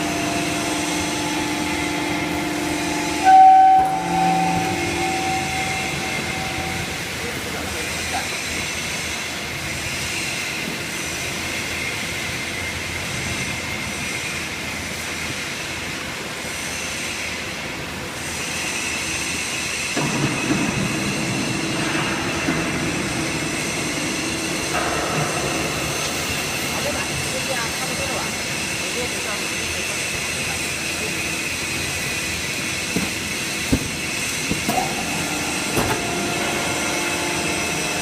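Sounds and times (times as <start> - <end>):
high whining tones: 0.0 - 7.8, 34.0 - 38.0
paper baler running: 0.0 - 7.8, 20.0 - 38.0.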